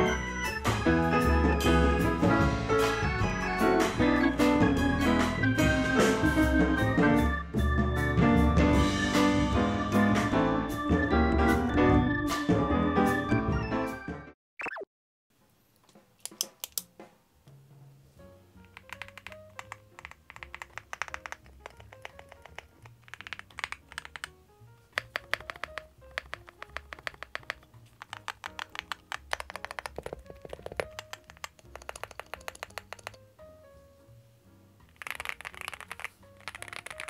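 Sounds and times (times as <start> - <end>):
background music: 0.0 - 14.4, 16.5 - 37.0
mechanical keyboard typing: 18.6 - 33.2, 34.9 - 37.0.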